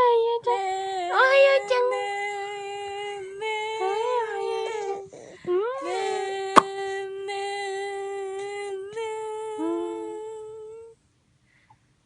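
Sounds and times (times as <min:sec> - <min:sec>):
baby crying: 0:03.8 - 0:06.7.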